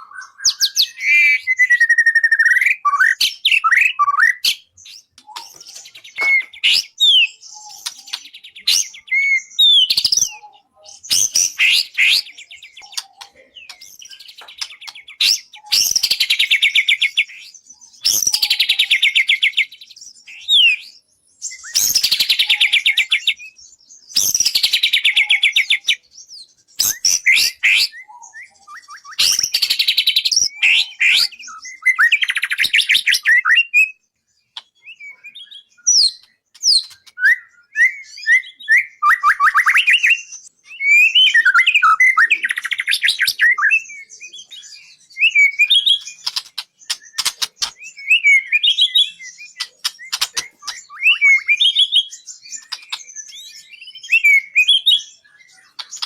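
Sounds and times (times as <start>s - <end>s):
bird singing trilled notes: 0.0s - 56.0s.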